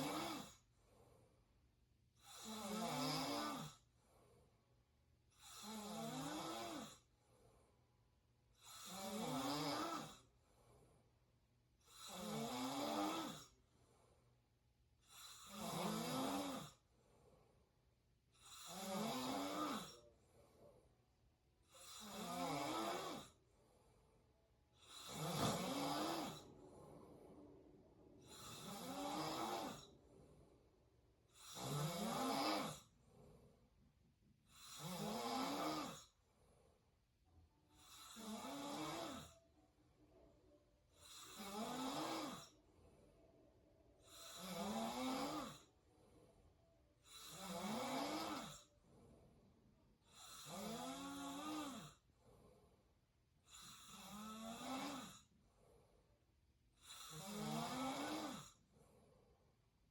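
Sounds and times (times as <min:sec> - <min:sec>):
person mouth snoring: 0:00.0 - 0:00.6, 0:02.2 - 0:03.8, 0:05.4 - 0:07.0, 0:08.6 - 0:10.2, 0:11.9 - 0:13.5, 0:15.1 - 0:16.8, 0:18.5 - 0:20.0, 0:21.8 - 0:23.4, 0:24.8 - 0:26.5, 0:28.2 - 0:29.9, 0:31.4 - 0:32.9, 0:34.5 - 0:36.1, 0:41.0 - 0:42.5, 0:44.0 - 0:45.7, 0:47.1 - 0:48.7, 0:50.1 - 0:52.0, 0:53.5 - 0:55.3, 0:56.8 - 0:58.6
quiet breathing: 0:00.0 - 0:59.9.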